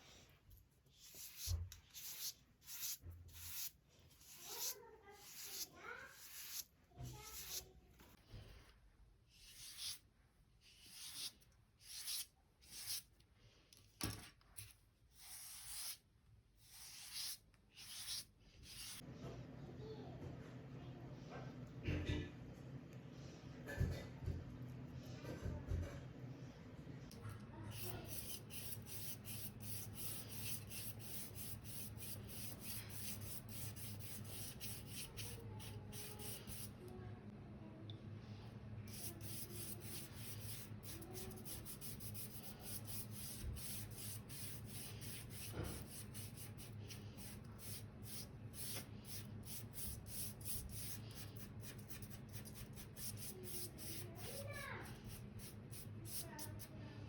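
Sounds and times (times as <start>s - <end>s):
paintbrush scrubbing on paper: 0.9s - 7.7s, 10.6s - 13.0s, 15.2s - 16.0s, 16.6s - 19.0s, 27.7s - 36.8s, 38.9s - 56.7s.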